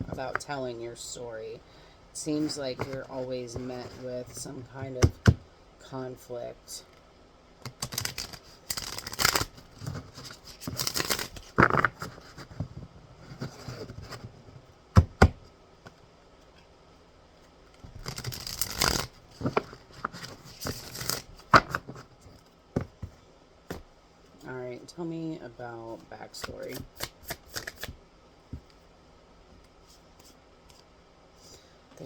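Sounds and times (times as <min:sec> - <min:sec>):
cards being shuffled: 0:02.4 - 0:04.4, 0:07.6 - 0:14.4, 0:17.8 - 0:22.4, 0:26.3 - 0:28.0.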